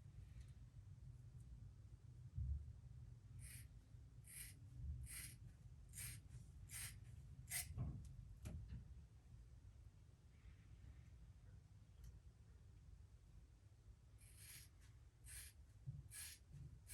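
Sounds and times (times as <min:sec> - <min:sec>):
sharp sniffs: 0:04.3 - 0:05.4, 0:06.0 - 0:07.7, 0:14.2 - 0:16.4.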